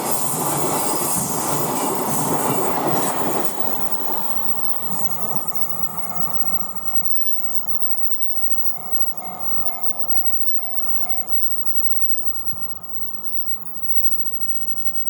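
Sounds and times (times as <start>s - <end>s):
passing train noise: 0.0s - 13.1s.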